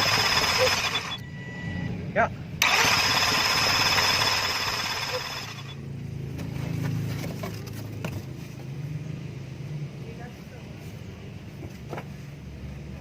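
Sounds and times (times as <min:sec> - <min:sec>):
car engine idling: 0:00.0 - 0:01.2, 0:02.6 - 0:08.2.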